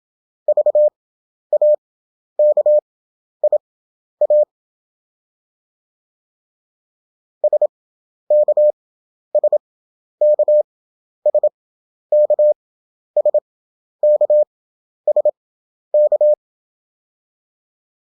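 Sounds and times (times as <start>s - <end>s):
morse code beeps: 0.5s - 0.9s, 1.5s - 1.8s, 2.4s - 2.8s, 4.2s - 4.5s, 7.4s - 7.7s, 8.3s - 8.7s, 9.4s - 9.6s, 10.2s - 10.6s, 11.3s - 11.6s, 12.2s - 12.6s, 13.2s - 13.4s, 14.0s - 14.5s, 15.1s - 15.4s, 16.0s - 16.4s.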